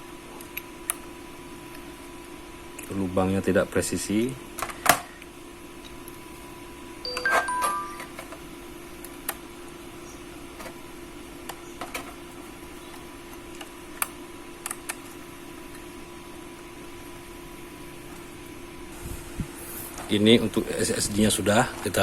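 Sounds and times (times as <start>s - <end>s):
steady background hum: 0.0s - 22.0s.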